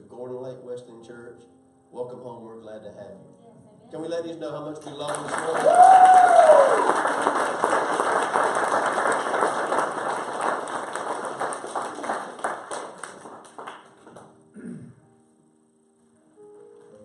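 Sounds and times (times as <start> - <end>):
congregation applauding: 4.7 - 14.3.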